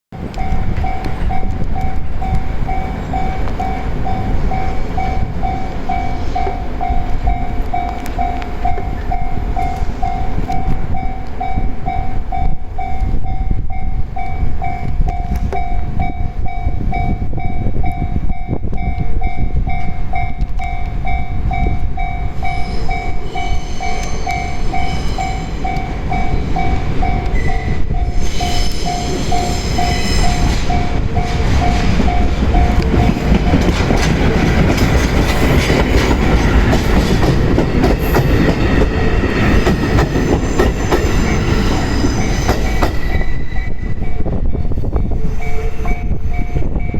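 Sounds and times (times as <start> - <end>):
locomotive rumble: 0.1 - 46.9
level crossing warning bell ringing: 0.2 - 46.9
high squeal: 22.2 - 32.8, 38.2 - 46.9.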